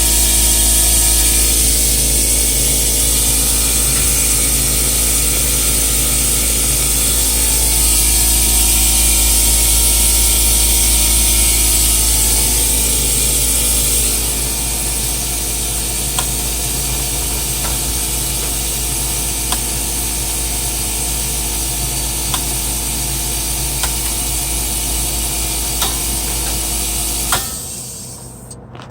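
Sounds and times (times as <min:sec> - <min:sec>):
compressor humming and hissing: 0:00.0 - 0:28.9.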